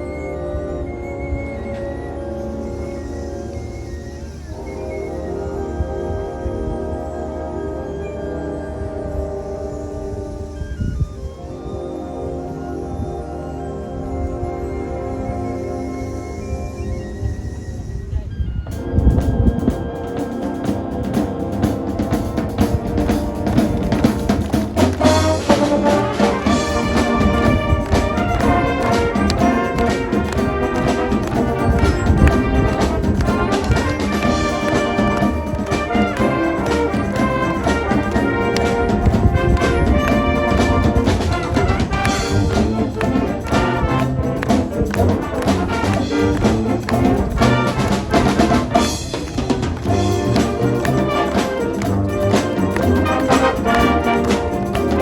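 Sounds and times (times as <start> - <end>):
marching band playing: 0.0 - 55.0.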